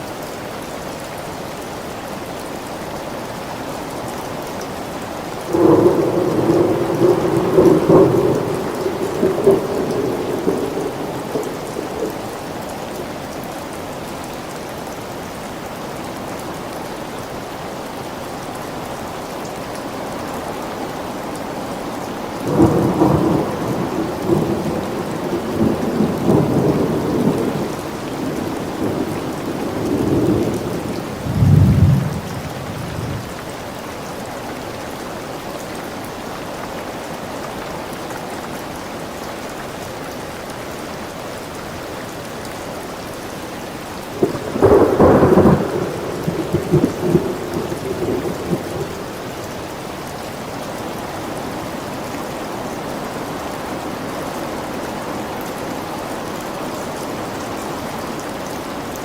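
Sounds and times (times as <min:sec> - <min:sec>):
steady rain falling: 0:00.0 - 0:59.0
rolling thunder: 0:05.5 - 0:12.2, 0:22.5 - 0:33.4, 0:44.2 - 0:49.3.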